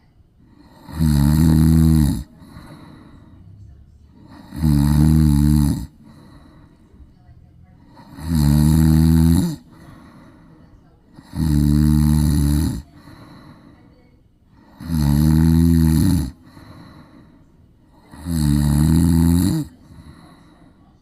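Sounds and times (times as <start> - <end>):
cat snoring: 0.5 - 6.6, 7.8 - 10.3, 11.1 - 13.6, 14.6 - 17.2, 17.9 - 20.5.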